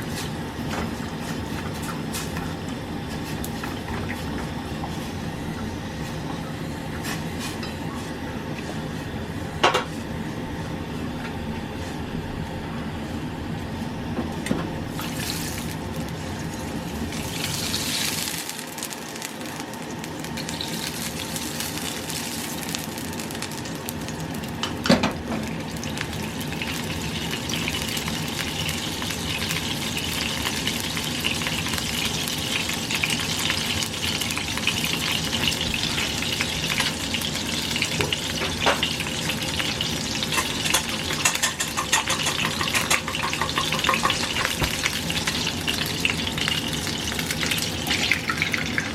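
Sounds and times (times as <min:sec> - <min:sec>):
food sizzling in frying pan: 0:14.9 - 0:48.9.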